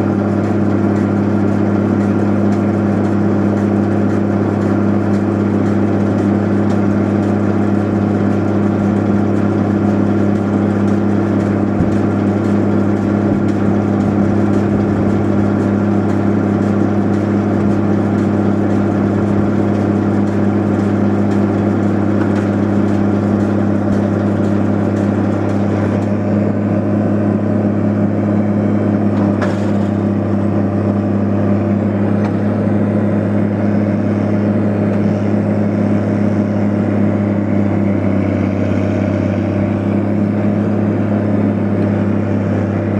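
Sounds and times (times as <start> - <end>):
tractor engine running: 0.0 - 42.9.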